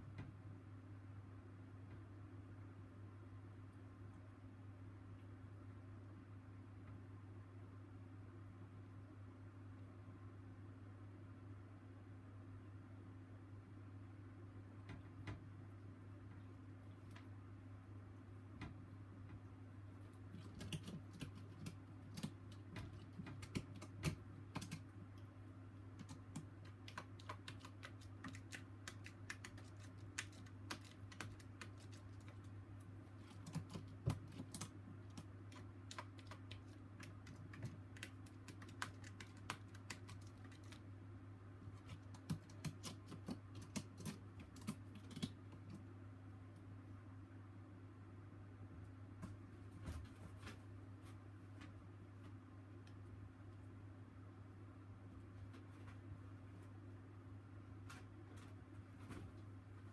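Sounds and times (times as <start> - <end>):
low steady hum: 0.0 - 59.9.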